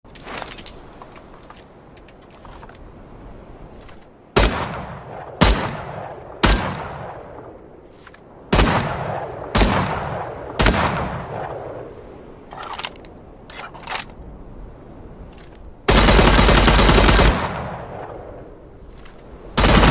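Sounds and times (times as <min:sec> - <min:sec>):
rifle shots with echo: 0:04.4 - 0:07.5, 0:08.5 - 0:11.7.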